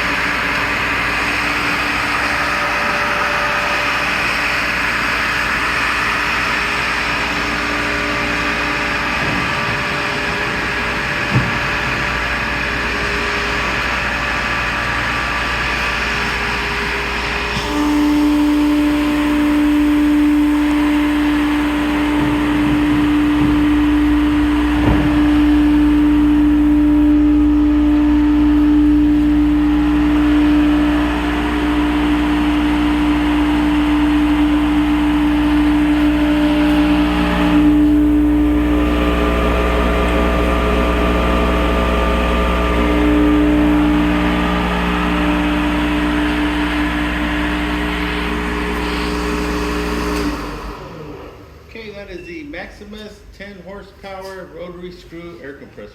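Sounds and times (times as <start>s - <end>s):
air compressor running: 0.0s - 52.2s.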